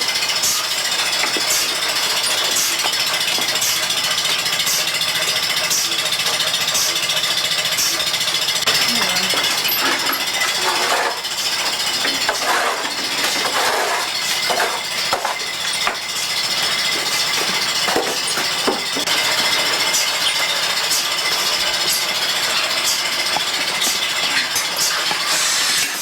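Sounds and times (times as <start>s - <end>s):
metal clinks and knocks: 0.0s - 4.4s, 8.7s - 25.2s
milking machine hum: 0.0s - 26.0s.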